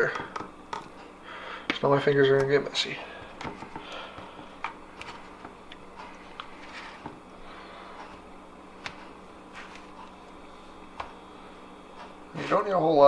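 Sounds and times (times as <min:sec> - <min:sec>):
soft rustling of breading: 0:08.1 - 0:11.3.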